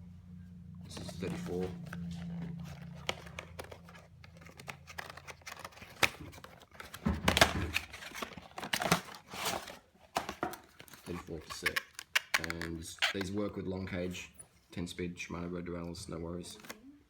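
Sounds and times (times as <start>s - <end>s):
packaging rustling and tearing: 0.9s - 13.4s.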